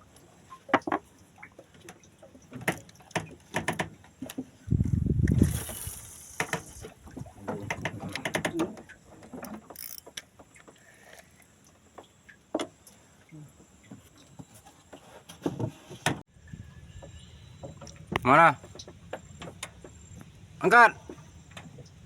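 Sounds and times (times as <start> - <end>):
fishing reel clicking and ratcheting: 5.2 - 6.9, 9.4 - 10.2.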